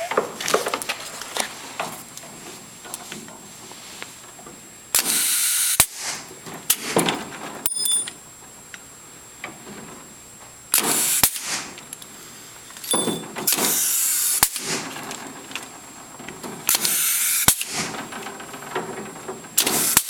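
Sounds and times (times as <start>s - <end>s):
clip gun hissing bursts: 4.9s - 7.1s, 10.7s - 11.8s, 13.5s - 15.0s, 16.7s - 18.0s, 19.6s - 20.0s
sharp snap: 10.8s - 11.8s, 14.4s - 14.9s.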